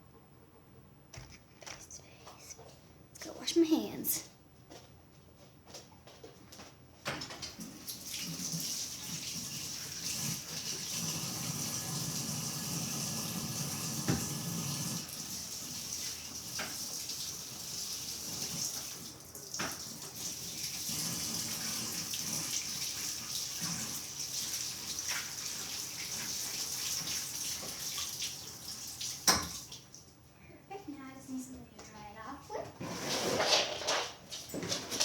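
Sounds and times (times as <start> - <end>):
tap water running: 7.5 - 30.1.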